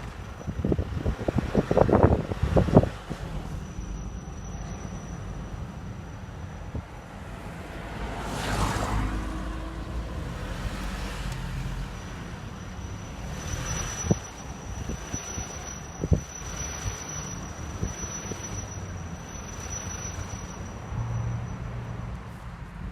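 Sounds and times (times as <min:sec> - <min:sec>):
car road rumble: 0:00.0 - 0:22.9.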